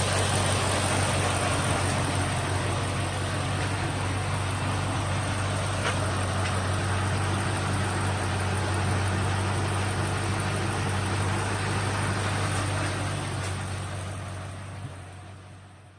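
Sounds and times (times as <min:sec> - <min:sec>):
car engine idling: 0:00.0 - 0:15.9.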